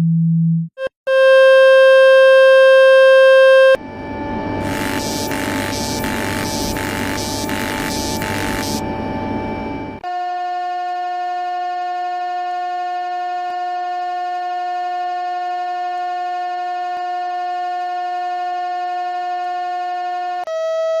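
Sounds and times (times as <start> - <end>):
buzzy electronic tone: 4.6 - 9.0.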